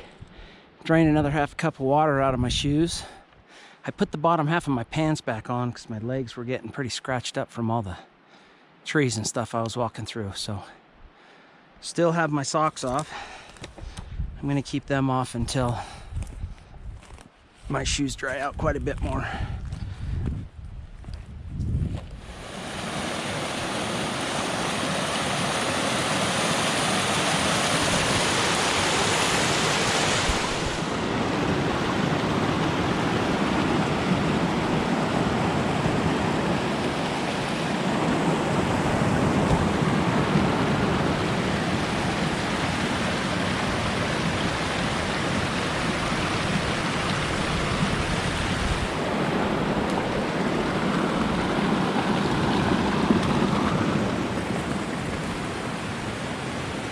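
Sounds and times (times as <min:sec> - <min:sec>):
stream rushing over rocks: 0:22.2 - 0:56.9.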